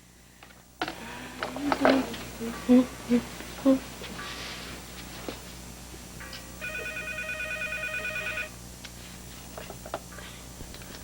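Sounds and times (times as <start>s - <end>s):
cordless telephone ringing: 6.6s - 8.6s.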